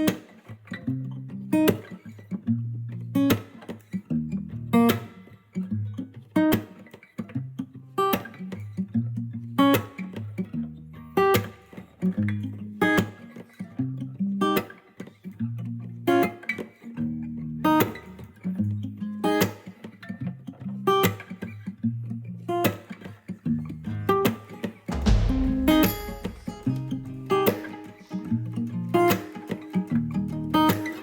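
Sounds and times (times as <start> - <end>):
plucked-string tune: 24.9 - 31.0.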